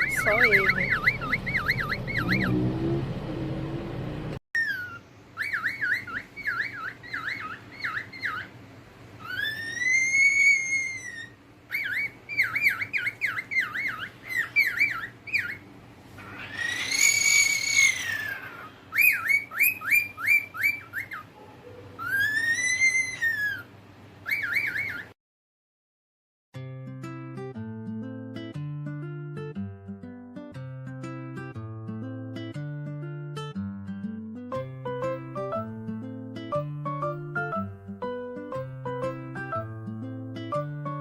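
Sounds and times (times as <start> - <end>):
cockatiel whistling: 0.0 - 2.6, 4.6 - 8.5, 9.2 - 15.6, 16.2 - 21.3, 22.0 - 25.1.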